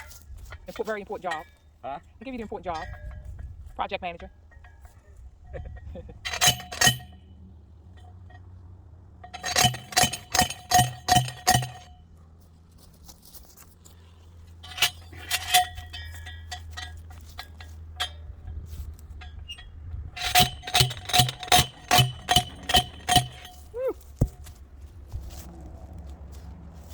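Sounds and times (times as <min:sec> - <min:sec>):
metal tool clinking: 0:00.0 - 0:07.2, 0:09.2 - 0:12.0, 0:14.5 - 0:24.6.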